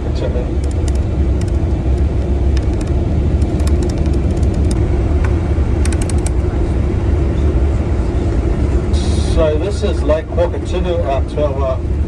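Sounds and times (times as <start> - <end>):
bus engine and road drone: 0.0 - 12.0
constant hum: 0.4 - 8.9
light clicks and rattles: 0.6 - 6.5.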